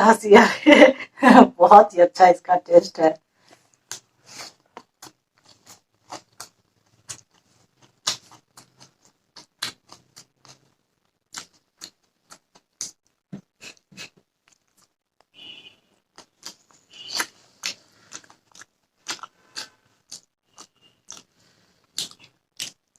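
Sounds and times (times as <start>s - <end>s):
person chewing food: 3.4s - 15.4s, 16.0s - 22.9s
wet mouth smacks and clicks: 7.9s - 10.6s, 16.2s - 21.3s, 21.9s - 22.8s.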